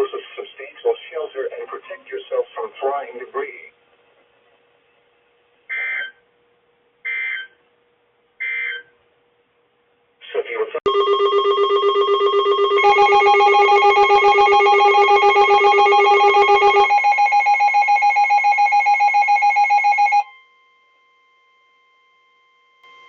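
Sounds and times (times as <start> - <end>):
rapid electronic alarm beeping: 8.4 - 8.9, 10.9 - 20.3.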